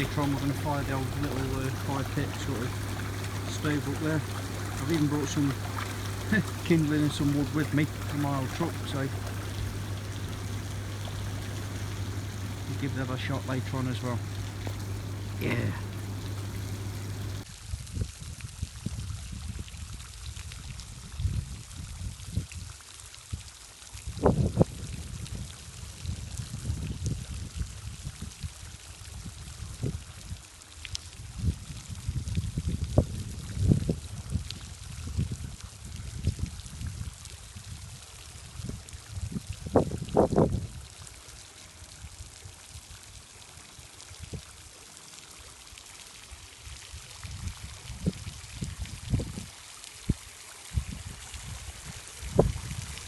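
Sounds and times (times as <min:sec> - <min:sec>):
hot tub water bubbling: 0:00.0 - 0:17.4, 0:33.3 - 0:53.0.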